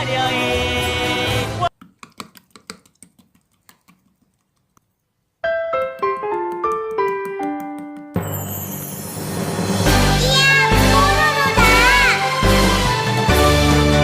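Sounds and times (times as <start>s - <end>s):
keyboard-like melody: 5.4s - 8.4s.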